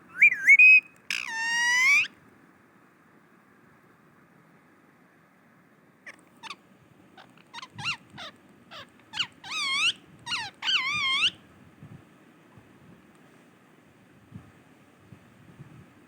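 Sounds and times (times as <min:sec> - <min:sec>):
parrot whistled calls: 0:00.1 - 0:02.1, 0:07.6 - 0:11.4.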